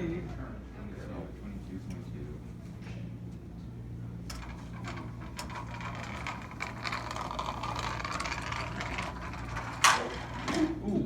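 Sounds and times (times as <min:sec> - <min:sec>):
toy car wheels rattling and whirring: 0:04.3 - 0:10.8.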